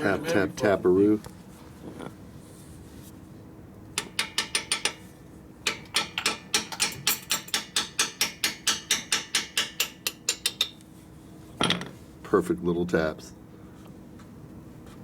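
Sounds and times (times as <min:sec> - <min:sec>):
hammer tapping on metal: 0:04.0 - 0:05.0, 0:05.7 - 0:10.7.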